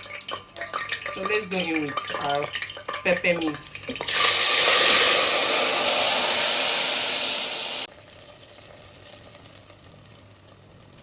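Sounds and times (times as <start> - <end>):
pepper mix sizzling in hot oil: 0.0 - 11.0.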